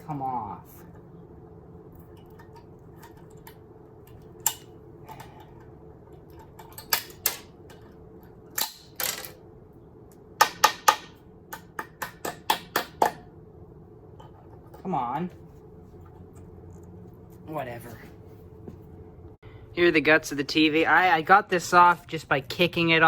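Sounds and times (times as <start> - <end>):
knocks and clicks of hard parts: 10.4 - 13.2.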